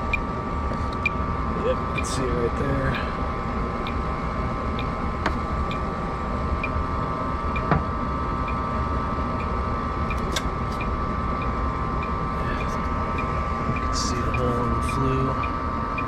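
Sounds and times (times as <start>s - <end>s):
furnace burner and blower rumble: 0.0s - 16.0s
steady high hum: 0.0s - 16.0s.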